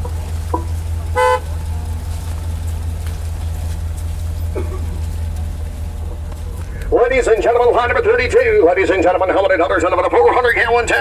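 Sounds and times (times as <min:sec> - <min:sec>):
steady low hum: 0:00.0 - 0:11.0
vehicle horn toot: 0:01.0 - 0:01.8.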